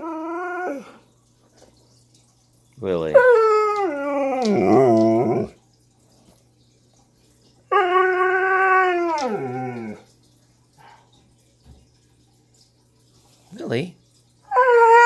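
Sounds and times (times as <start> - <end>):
dog howling call: 0.0 - 1.0, 3.2 - 5.6, 7.7 - 10.0, 14.5 - 15.0.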